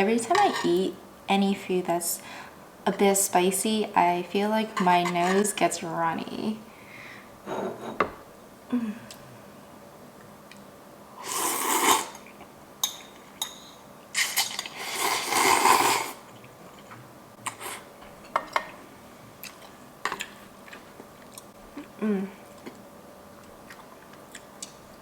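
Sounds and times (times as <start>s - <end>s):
noodles slurped: 11.2s - 12.2s, 14.2s - 16.2s.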